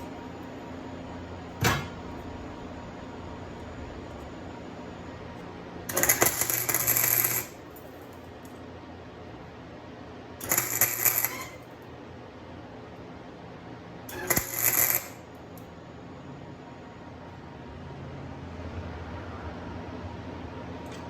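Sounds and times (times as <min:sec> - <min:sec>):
background hum: 0:00.0 - 0:09.6
welding crackling buzz: 0:05.8 - 0:07.7, 0:10.4 - 0:11.7, 0:14.1 - 0:15.2.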